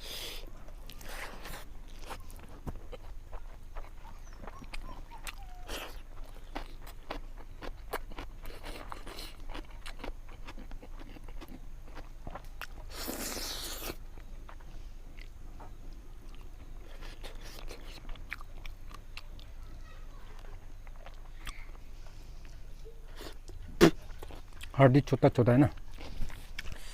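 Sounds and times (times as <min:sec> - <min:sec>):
person chewing and lip smacking: 0:00.7 - 0:19.6, 0:20.3 - 0:21.8, 0:22.4 - 0:24.8, 0:25.7 - 0:26.9.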